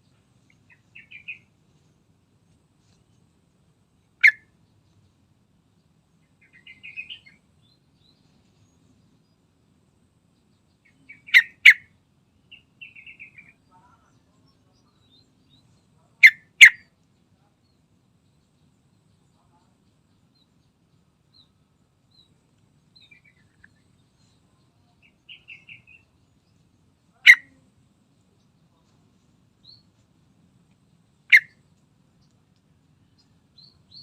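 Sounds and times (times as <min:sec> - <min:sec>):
bird sharp calls: 0:00.0 - 0:01.5, 0:04.2 - 0:04.5, 0:06.4 - 0:07.4, 0:10.9 - 0:11.9, 0:16.1 - 0:16.9, 0:25.0 - 0:26.0, 0:27.1 - 0:27.6, 0:31.3 - 0:31.6
bird chattering: 0:00.5 - 0:01.5, 0:04.2 - 0:04.5, 0:06.4 - 0:07.4, 0:10.8 - 0:11.9, 0:12.5 - 0:14.1, 0:16.1 - 0:16.9, 0:25.0 - 0:26.0, 0:27.1 - 0:27.6, 0:31.2 - 0:31.6.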